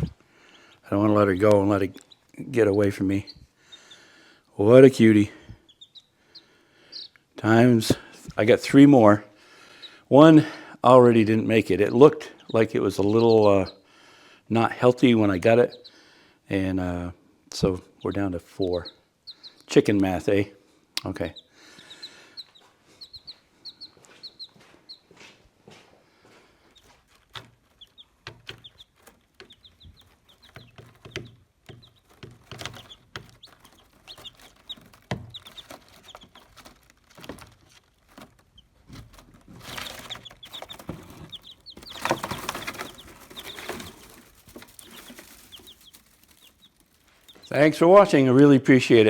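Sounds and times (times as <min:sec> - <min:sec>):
chicks peeping: 0:00.0 - 0:25.4, 0:26.0 - 0:49.0
rustling: 0:22.7 - 0:49.0.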